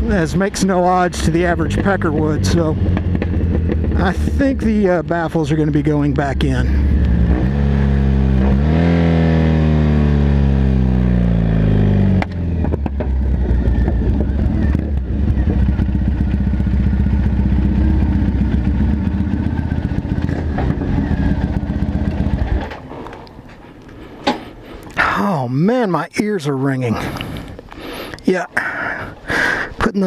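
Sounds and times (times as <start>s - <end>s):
loud motorcycle engine running: 0.0s - 22.9s.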